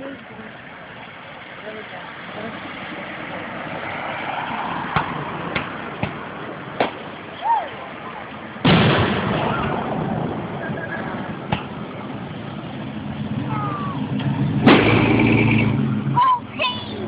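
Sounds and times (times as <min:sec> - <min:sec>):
firework bangs with crackle: 0:06.8 - 0:07.1, 0:08.6 - 0:11.9, 0:14.6 - 0:15.7.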